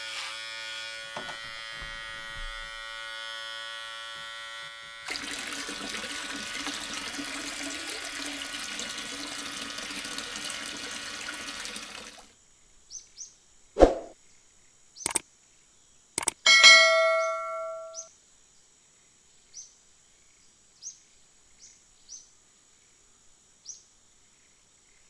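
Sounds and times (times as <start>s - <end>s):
small electric motor buzzing: 0.0s - 5.1s
water rushing: 5.1s - 12.3s
sharp click: 15.0s - 15.2s, 16.2s - 16.5s.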